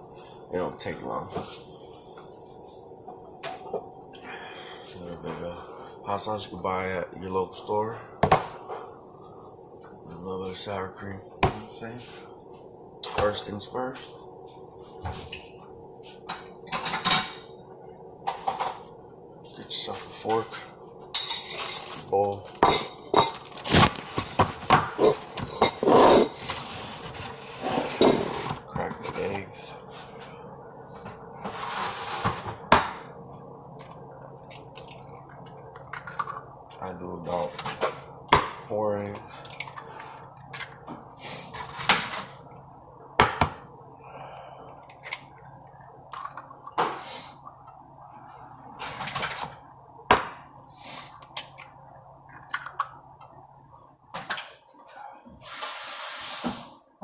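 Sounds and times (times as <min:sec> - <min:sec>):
eggs cracking against a bowl: 0:33.8 - 0:36.8, 0:44.3 - 0:46.8, 0:51.2 - 0:53.0.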